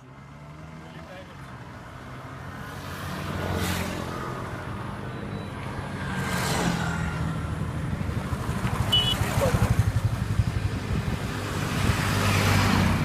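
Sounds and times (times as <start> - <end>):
motorcycle engine running: 7.4 - 13.0.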